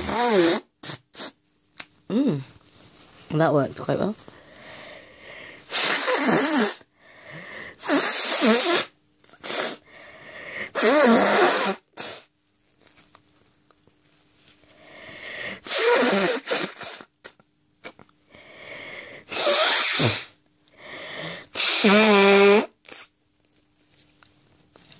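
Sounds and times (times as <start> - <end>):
person blowing nose: 0.0 - 1.4, 5.6 - 12.3, 15.2 - 18.0, 19.2 - 20.4, 21.1 - 23.2
quiet breathing: 4.2 - 5.7, 6.9 - 7.8, 9.8 - 10.7, 14.6 - 15.6, 18.3 - 19.3, 20.7 - 21.5.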